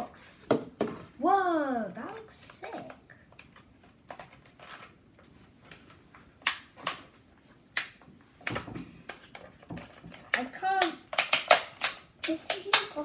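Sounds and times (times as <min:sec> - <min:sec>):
sharp plastic clicks: 0:07.8 - 0:13.0.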